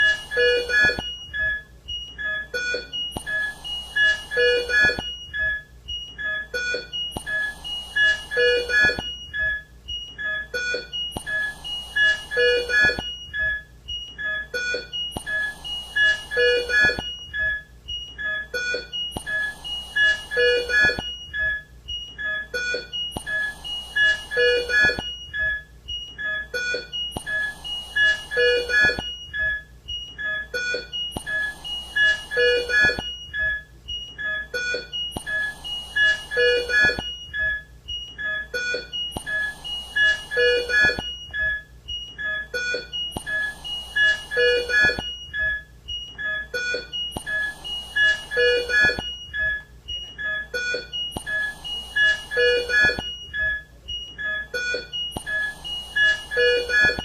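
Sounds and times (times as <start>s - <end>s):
electronic alarm beeps: 0.0s - 57.0s.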